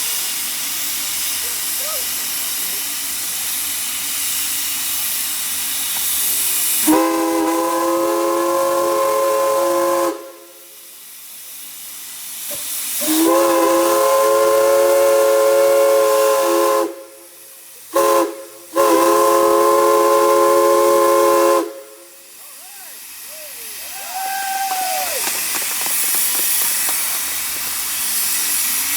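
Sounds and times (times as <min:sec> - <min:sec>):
steam hissing: 0:00.0 - 0:28.9
chime steam whistle: 0:06.8 - 0:10.8.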